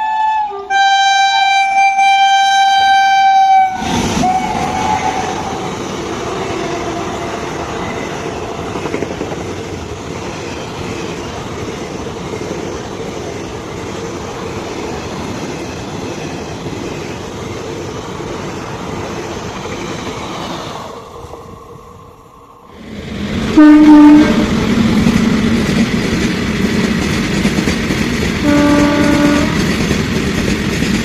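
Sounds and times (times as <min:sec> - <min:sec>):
train horn: 0:00.0 - 0:05.5, 0:23.6 - 0:24.6, 0:28.4 - 0:29.8
train rushing past: 0:00.0 - 0:31.0
train wheels on rails: 0:02.9 - 0:31.0.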